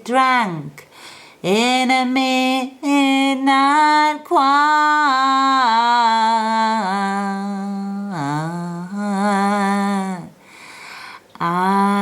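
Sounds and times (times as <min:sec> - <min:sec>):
singer breathing: 0:00.9 - 0:01.4, 0:10.4 - 0:11.3
person singing unaccompanied: 0:01.4 - 0:10.4, 0:11.3 - 0:12.0.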